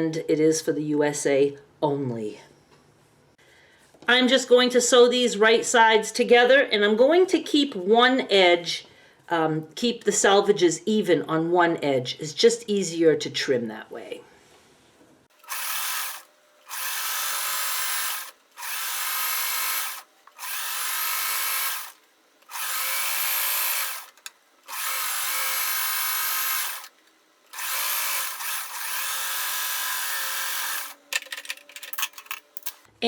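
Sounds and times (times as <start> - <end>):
electric sewing machine running: 15.4 - 31.2.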